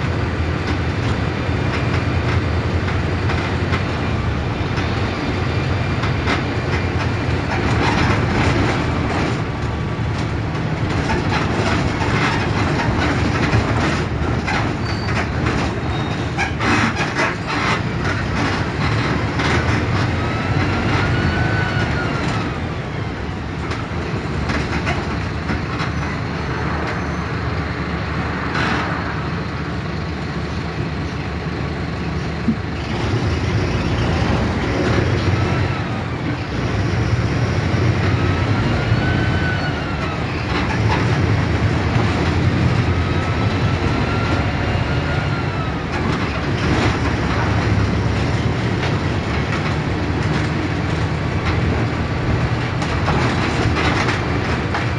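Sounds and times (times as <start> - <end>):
bus diesel engine running: 0.0 - 54.9
body rattles and knocks: 0.3 - 21.1, 23.5 - 27.0, 45.9 - 54.9.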